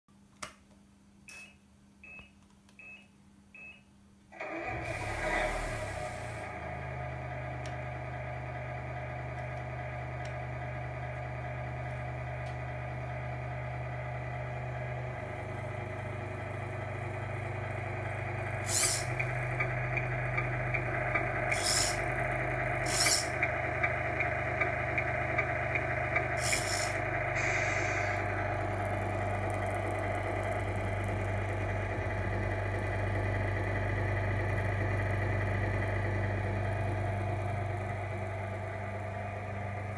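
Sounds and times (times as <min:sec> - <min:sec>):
simulated truck engine running: 0:04.4 - 0:39.9
short hisses: 0:04.9 - 0:06.4, 0:18.6 - 0:19.2, 0:21.5 - 0:22.1, 0:22.8 - 0:23.4, 0:26.4 - 0:28.2.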